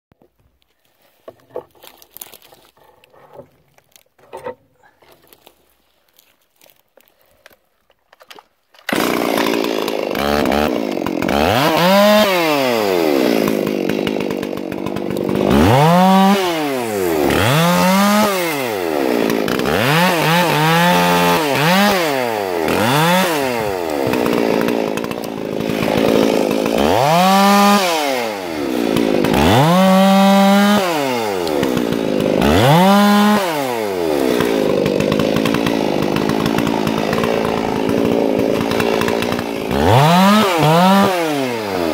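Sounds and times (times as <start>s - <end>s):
chainsaw revving: 8.9s - 41.9s.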